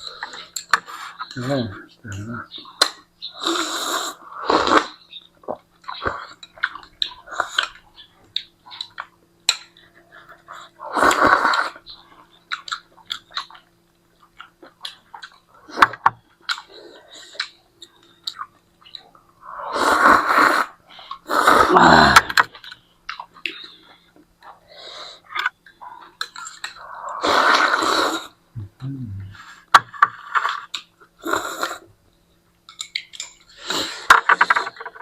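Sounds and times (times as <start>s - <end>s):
loud noodle slurps: 19.7s - 20.7s, 27.2s - 28.3s.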